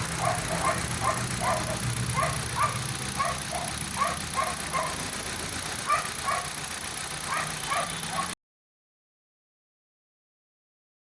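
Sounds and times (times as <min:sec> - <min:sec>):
car engine idling: 0:00.0 - 0:08.4.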